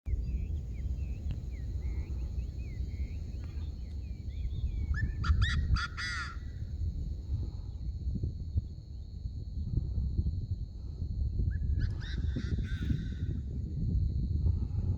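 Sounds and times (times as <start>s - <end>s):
harsh ringing bird calls: 0.1s - 6.6s.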